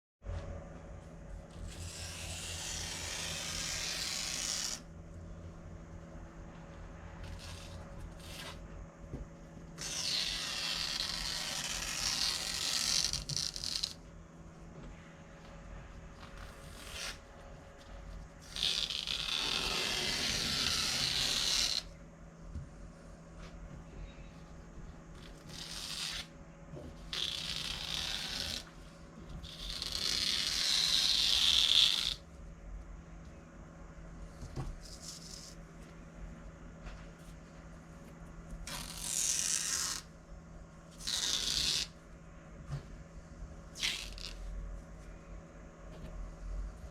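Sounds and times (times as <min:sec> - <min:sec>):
cloth ripping from paper: 0:01.7 - 0:04.8, 0:09.8 - 0:14.0, 0:16.3 - 0:17.3, 0:18.4 - 0:21.9, 0:25.3 - 0:26.3, 0:27.1 - 0:28.7, 0:29.4 - 0:32.2, 0:38.6 - 0:40.1, 0:40.9 - 0:41.9, 0:43.8 - 0:44.4.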